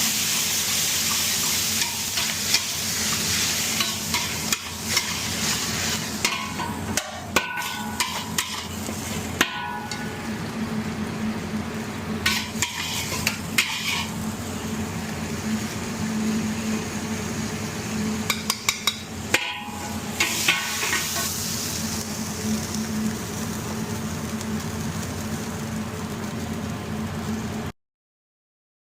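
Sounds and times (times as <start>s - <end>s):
food sizzling in a pan: 0.0s - 27.7s
metal utensil scraping a pan: 1.1s - 10.1s, 12.3s - 14.2s.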